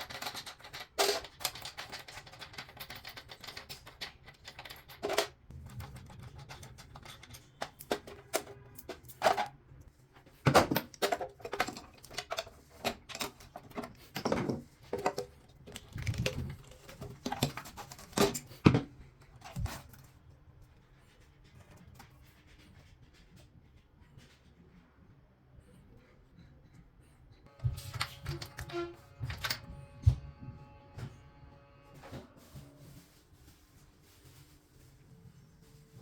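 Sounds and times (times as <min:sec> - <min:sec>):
objects knocking and clicking: 0:00.0 - 0:09.6, 0:10.4 - 0:19.8.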